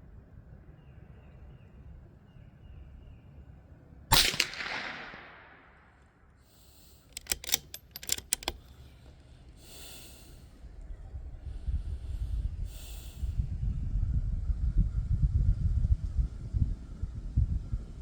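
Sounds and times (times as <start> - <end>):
rifle bolt metallic clicks: 4.1 - 5.8, 7.0 - 8.8
rifle shot with echo: 4.1 - 6.0.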